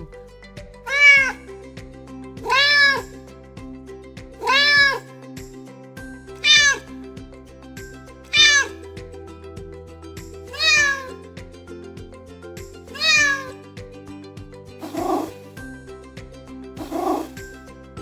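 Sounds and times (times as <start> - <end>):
light background music: 0.0 - 18.0
cat meowing: 0.9 - 1.5, 2.4 - 3.1, 4.4 - 5.1, 6.4 - 6.9, 8.3 - 8.8, 10.5 - 11.2, 12.9 - 13.6, 14.8 - 15.4, 16.8 - 17.4.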